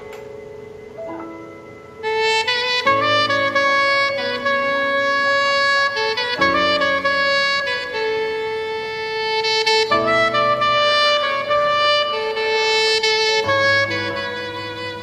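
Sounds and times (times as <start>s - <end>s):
saxophone melody over chords: 0.0s - 15.0s.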